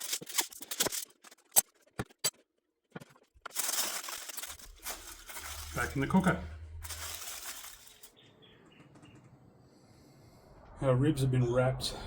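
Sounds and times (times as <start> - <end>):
aluminium foil crinkling: 0.0 - 1.6, 3.1 - 8.1.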